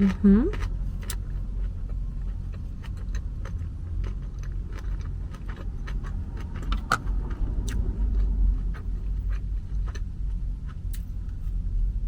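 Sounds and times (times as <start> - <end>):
chewing sounds: 0.0 - 11.5
road traffic rumble: 0.0 - 12.0.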